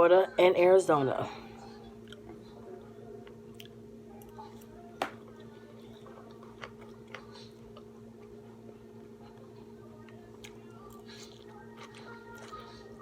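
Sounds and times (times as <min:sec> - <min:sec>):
chewing and mouth sounds: 0:02.0 - 0:02.4, 0:03.2 - 0:04.7, 0:09.3 - 0:13.0.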